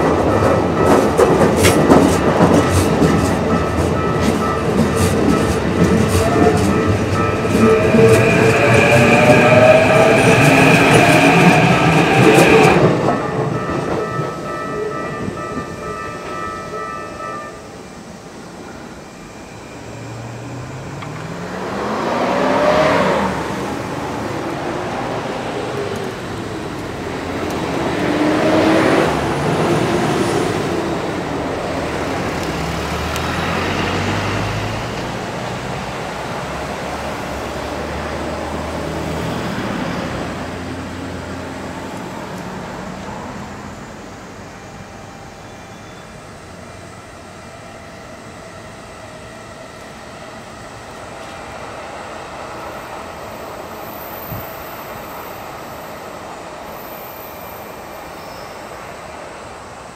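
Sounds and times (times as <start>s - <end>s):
motor vehicles passing: 21.0s - 23.8s.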